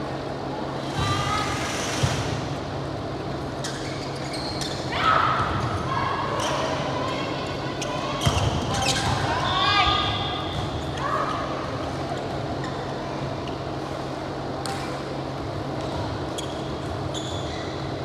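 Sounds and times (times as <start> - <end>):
sneakers squeaking on court floor: 3.4 - 6.8, 7.7 - 13.8, 14.7 - 18.0.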